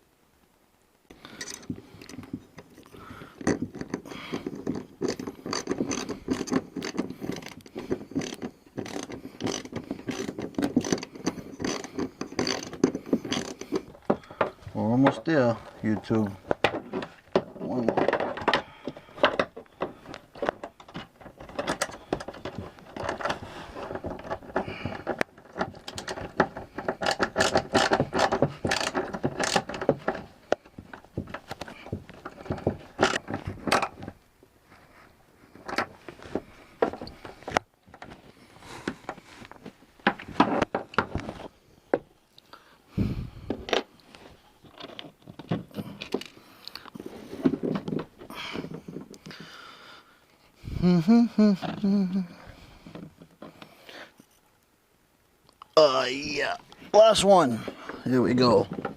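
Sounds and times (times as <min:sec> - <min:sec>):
nut and bolt clicking and rattling: 0:01.1 - 0:34.3, 0:35.5 - 0:39.2, 0:44.6 - 0:49.4.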